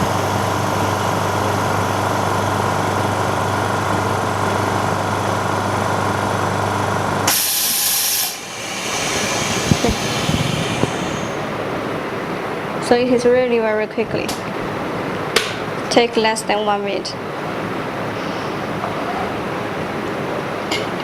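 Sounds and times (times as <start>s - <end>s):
vacuum pump humming: 0.0s - 12.9s
air venting hiss: 7.2s - 14.3s.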